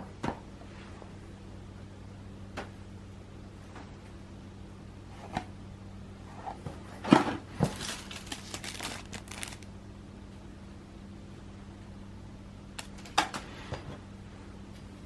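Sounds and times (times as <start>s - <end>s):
steady low hum: 0.0s - 15.0s
crinkling and rustling: 6.4s - 9.7s.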